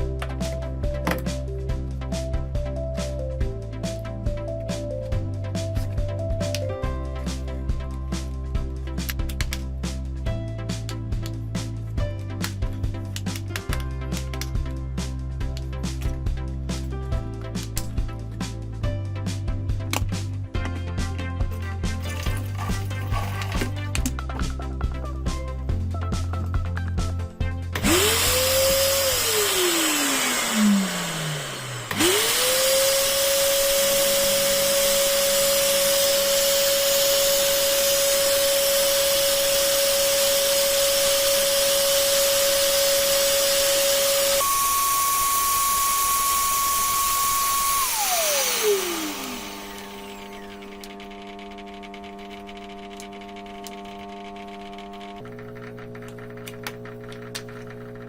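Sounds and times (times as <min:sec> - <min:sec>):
carpet cleaner motor whining: 0:27.8 - 0:58.0.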